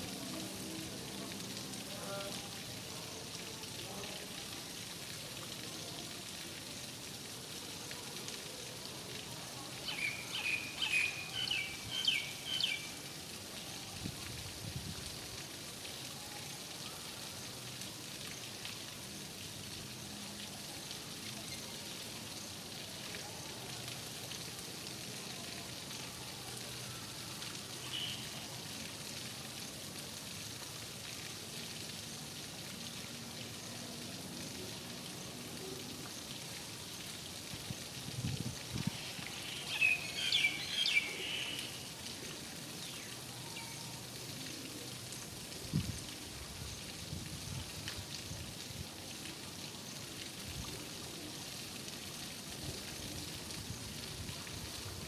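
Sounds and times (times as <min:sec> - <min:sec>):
rain hiss: 0:00.0 - 0:55.0
bird calling and chirping: 0:39.4 - 0:41.8.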